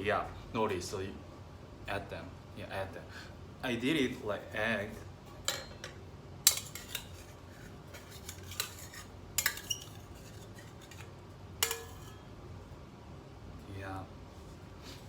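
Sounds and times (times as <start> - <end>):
metal utensil clinking on cookware: 5.5 - 7.3, 7.9 - 12.3.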